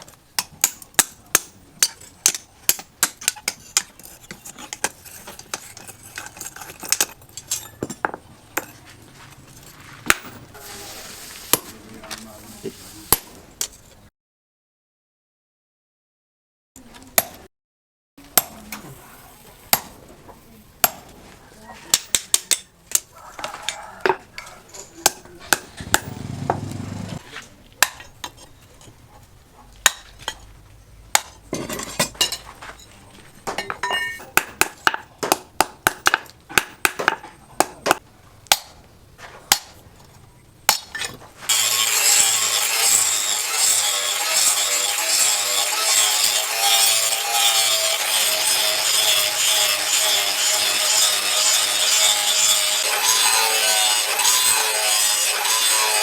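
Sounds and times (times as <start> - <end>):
steady rasping noise: 25.0 - 27.2
hammer striking steel: 33.6 - 38.7.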